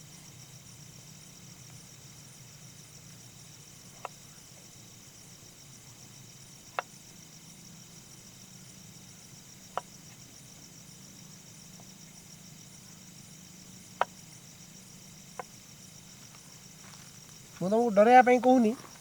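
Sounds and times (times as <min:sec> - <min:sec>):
crickets chirping: 0:00.0 - 0:19.0.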